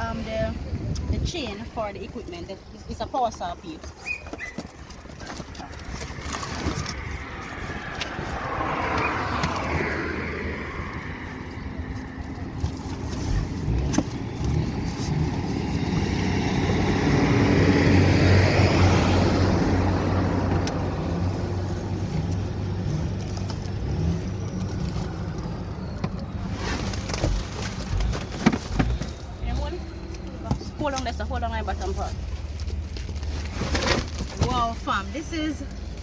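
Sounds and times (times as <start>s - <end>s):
vehicle passing by: 5.4s - 28.0s.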